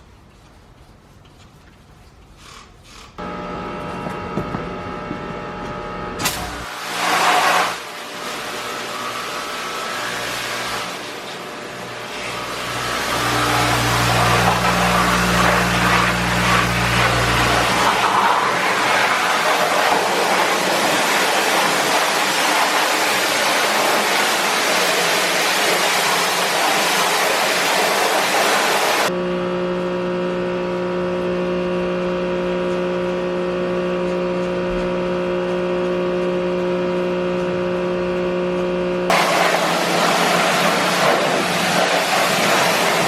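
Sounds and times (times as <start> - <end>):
steady mechanical hum: 0.0 - 27.2, 28.1 - 43.0
pressure washer spraying: 6.2 - 29.1, 39.1 - 43.0.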